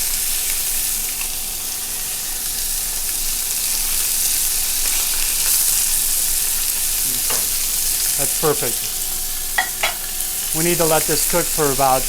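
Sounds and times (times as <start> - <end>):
chicken sizzling in oil: 0.0 - 12.0.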